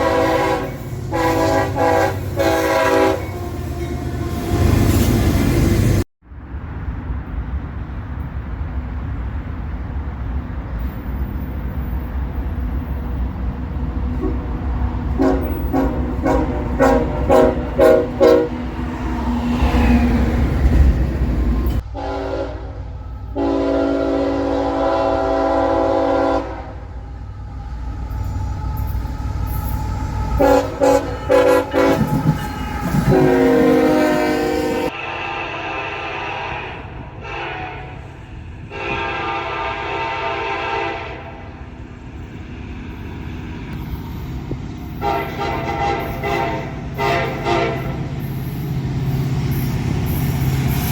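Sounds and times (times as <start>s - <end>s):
locomotive air horn: 0.0s - 4.8s, 14.2s - 18.7s, 21.8s - 27.0s, 29.7s - 41.6s, 44.9s - 48.2s
rumble of moving train: 0.0s - 50.9s.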